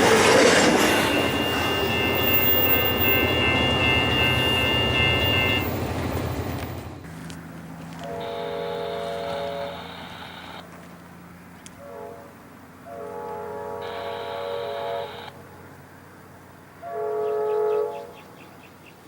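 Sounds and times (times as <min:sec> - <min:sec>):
locomotive air horn blasts: 0:01.1 - 0:05.8, 0:07.8 - 0:10.7, 0:11.8 - 0:15.4, 0:16.8 - 0:18.2.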